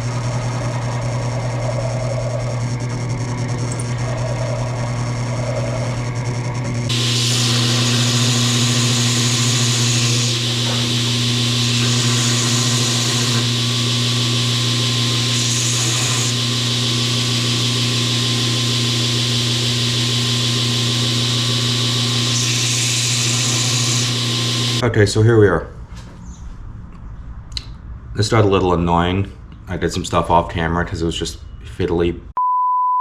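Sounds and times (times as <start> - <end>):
electric power tool motor humming: 0.0 - 24.8.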